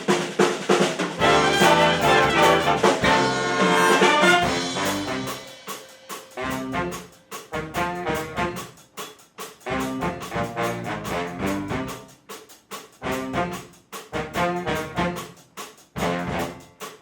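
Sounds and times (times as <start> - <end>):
drum kit hits: 0.0 - 8.7
brass section stabs: 1.2 - 8.7, 9.6 - 12.1, 13.0 - 15.3, 16.0 - 16.9.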